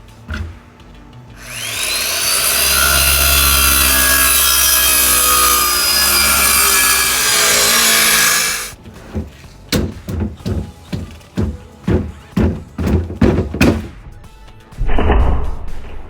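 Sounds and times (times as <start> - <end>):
power saw cutting plywood: 1.4 - 9.4.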